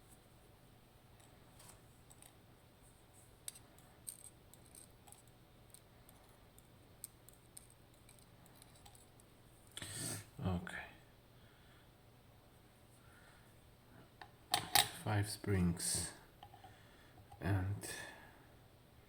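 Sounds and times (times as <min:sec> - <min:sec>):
small metal parts clicking: 0:03.5 - 0:09.2.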